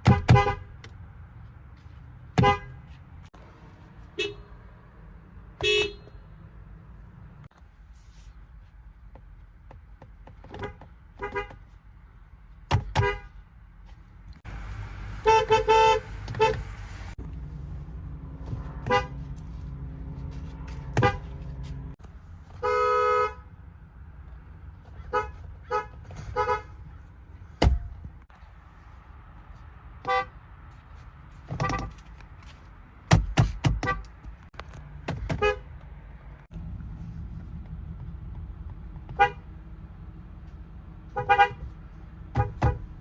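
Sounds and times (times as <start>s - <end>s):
car horns honking: 0.0s - 0.9s, 2.3s - 3.0s, 4.1s - 4.6s, 5.5s - 6.4s, 10.5s - 11.6s, 12.7s - 13.4s, 14.8s - 17.2s, 18.6s - 19.4s, 20.6s - 23.6s, 25.0s - 26.9s, 30.0s - 30.4s, 31.5s - 32.0s, 33.7s - 34.2s, 35.2s - 35.8s, 39.1s - 39.5s, 41.1s - 41.7s, 42.3s - 43.0s.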